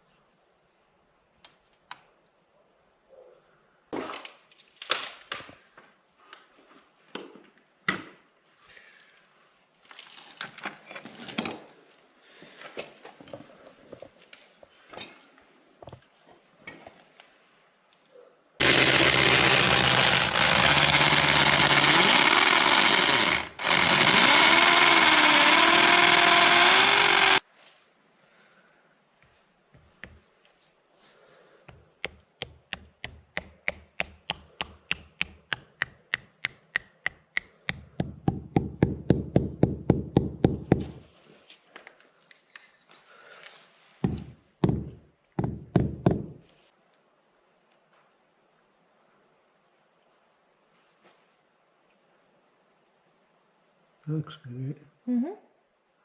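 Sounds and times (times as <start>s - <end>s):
power tool running: 18.6s - 27.4s.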